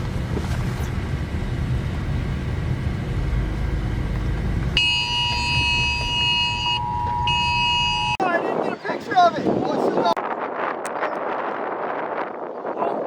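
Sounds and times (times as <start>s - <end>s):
low rumble: 0.0s - 8.2s
phone emergency alert tone: 4.8s - 8.2s.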